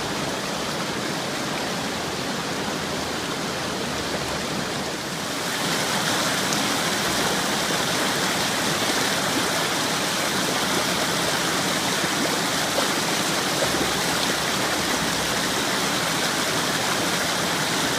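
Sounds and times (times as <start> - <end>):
running water rushing: 0.0 - 17.9.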